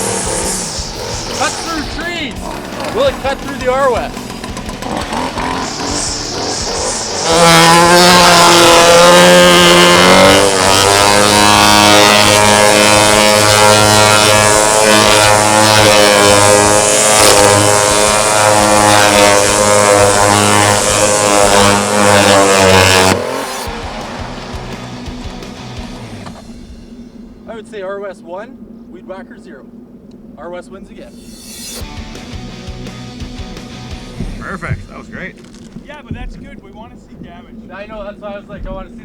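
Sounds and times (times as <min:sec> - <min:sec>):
weed whacker engine at high revs: 0:00.0 - 0:26.9
trimmer line hitting fabric: 0:02.4 - 0:23.4.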